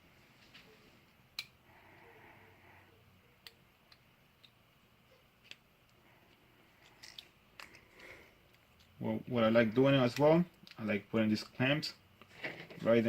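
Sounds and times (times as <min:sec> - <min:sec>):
faint clicks and taps of small parts: 0:03.4 - 0:04.6, 0:05.4 - 0:09.0.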